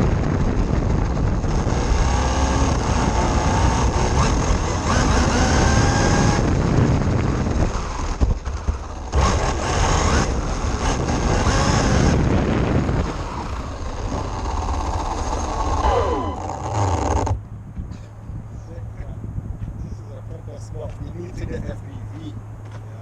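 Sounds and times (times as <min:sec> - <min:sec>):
rc car motor whining: 0:11.4 - 0:17.4.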